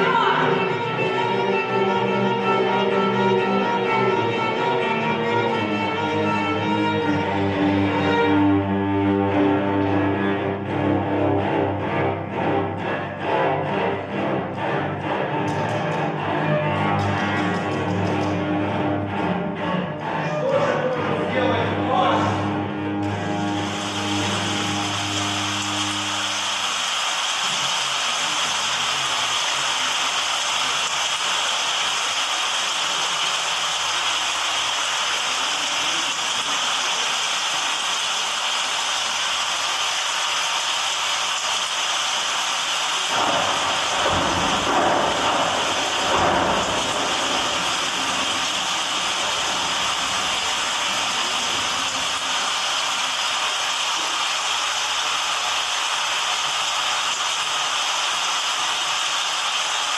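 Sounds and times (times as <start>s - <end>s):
string quartet bowed hiss: 0.0s - 57.9s
deep rumble: 43.1s - 52.6s.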